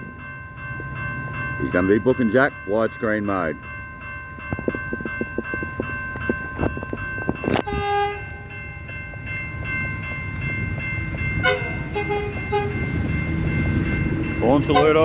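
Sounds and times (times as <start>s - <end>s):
diesel railcar rumble: 0.0s - 15.0s
train horn blasts: 7.6s - 8.5s, 11.4s - 12.9s, 14.6s - 15.0s.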